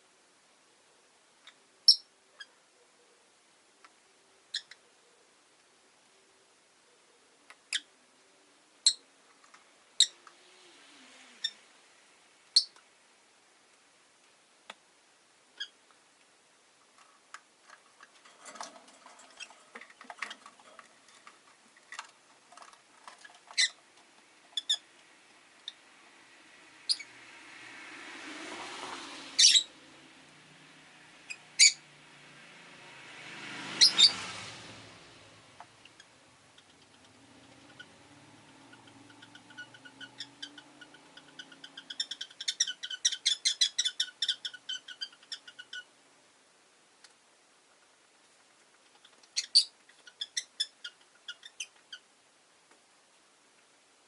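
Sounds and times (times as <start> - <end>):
lovebirds chirping: 1.4 - 5.4, 6.2 - 11.8, 12.4 - 12.8, 18.5 - 23.9, 24.5 - 25.9, 26.7 - 27.2, 29.4 - 29.9, 31.2 - 31.9, 33.8 - 34.2, 35.8 - 45.9, 48.9 - 52.1
car passing: 10.2 - 12.4, 23.9 - 43.2.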